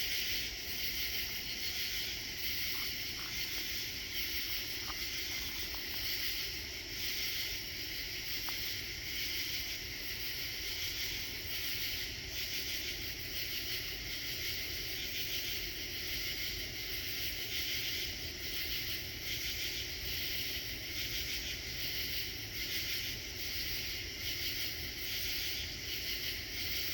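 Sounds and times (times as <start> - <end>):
night insects trilling: 0.0 - 26.9.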